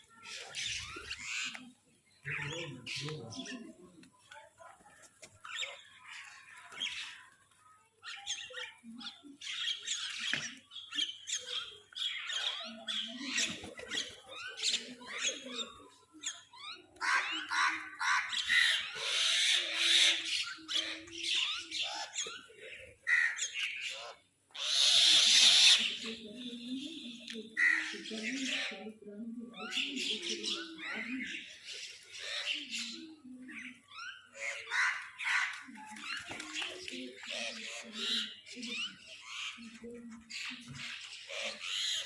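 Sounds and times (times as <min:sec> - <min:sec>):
crows squawking: 0:23.0 - 0:26.0, 0:27.6 - 0:28.7, 0:34.3 - 0:35.6.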